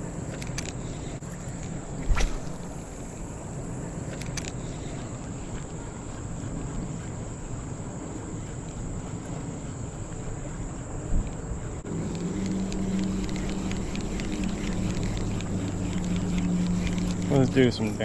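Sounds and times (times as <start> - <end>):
steady low hum: 1.1 - 5.9
short thud: 1.9 - 3.6.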